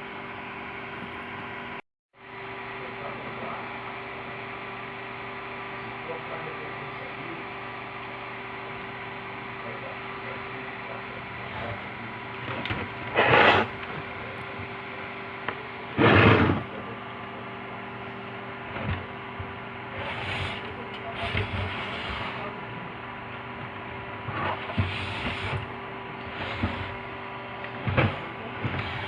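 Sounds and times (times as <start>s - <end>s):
electrical hum: 0.0s - 29.0s
mechanical noise bursts: 16.0s - 16.7s.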